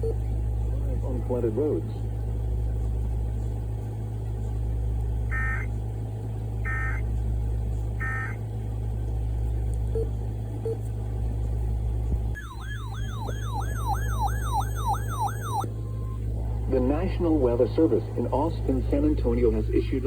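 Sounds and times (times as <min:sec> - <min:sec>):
steady low hum: 0:00.0 - 0:20.0
warbling digital data tones: 0:12.4 - 0:15.7
sweeping siren-like tone: 0:12.4 - 0:16.3.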